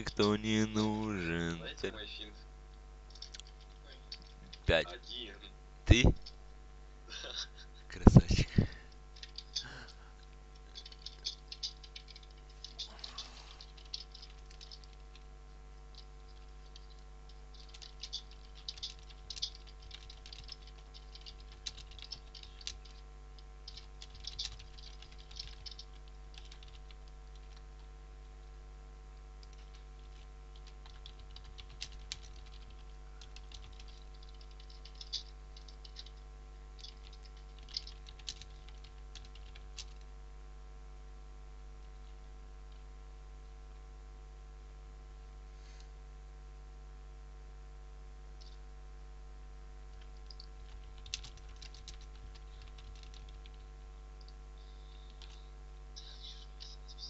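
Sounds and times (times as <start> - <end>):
low electrical hum: 0.0 - 57.0
computer keyboard typing: 3.1 - 4.8, 8.7 - 10.0, 10.6 - 28.5, 29.4 - 40.0, 49.9 - 57.0.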